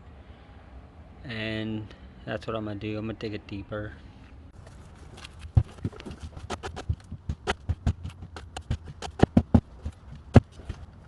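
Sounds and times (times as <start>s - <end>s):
digging tool knocking dirt and stones: 5.1s - 10.9s.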